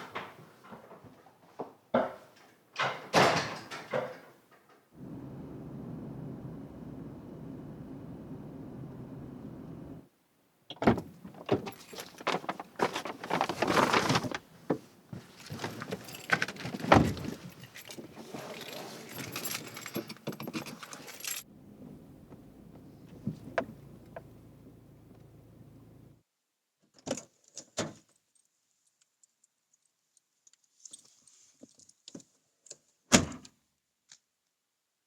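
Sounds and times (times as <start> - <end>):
steady low hum: 5.0 - 10.0
metallic jingling and clattering: 11.4 - 14.4, 15.3 - 21.5.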